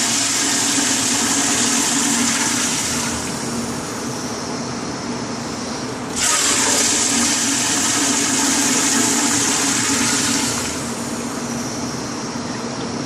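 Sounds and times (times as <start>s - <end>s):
toilet flushing: 0.0s - 3.7s, 6.1s - 11.5s.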